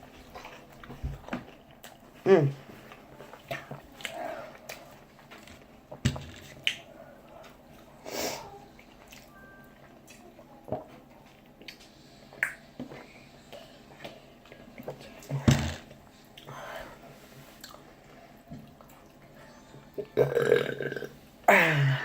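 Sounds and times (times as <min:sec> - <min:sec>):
chewing mouth clicks and smacks: 0:06.5 - 0:06.9.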